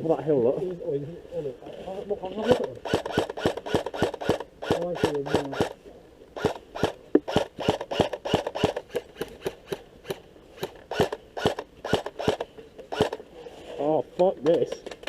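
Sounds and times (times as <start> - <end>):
airsoft guns firing: 2.4 - 5.8, 6.4 - 13.2.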